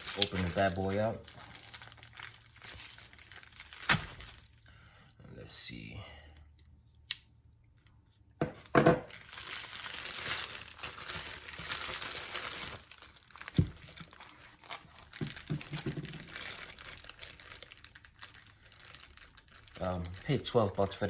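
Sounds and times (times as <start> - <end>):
packaging tearing and crinkling: 0.0 - 4.6, 9.1 - 21.0.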